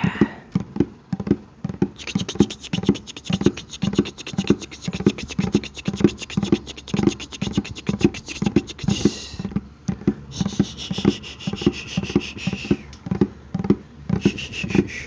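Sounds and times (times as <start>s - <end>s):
scratching and tapping on bucket: 0.1s - 15.0s
short hiss: 2.0s - 9.5s, 10.3s - 13.0s, 14.2s - 15.0s
mouth sounds: 2.0s - 9.6s, 10.3s - 13.1s, 14.1s - 15.0s.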